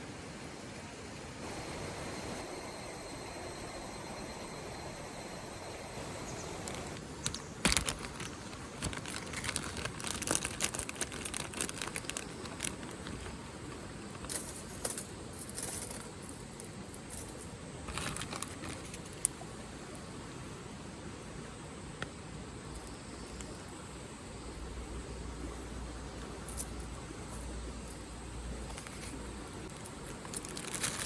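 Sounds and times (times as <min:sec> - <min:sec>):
background hiss: 0:00.0 - 0:31.0
crinkling and rustling: 0:06.4 - 0:19.4, 0:26.5 - 0:31.0.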